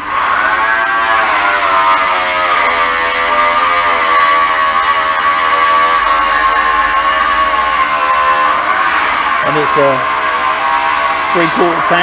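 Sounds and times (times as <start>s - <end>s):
electric motor whining: 0.0s - 12.0s.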